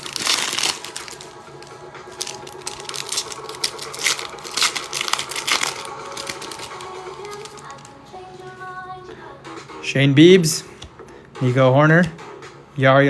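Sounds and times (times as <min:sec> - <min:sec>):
wrappers crinkling: 0:00.0 - 0:08.2
background music: 0:00.0 - 0:13.0.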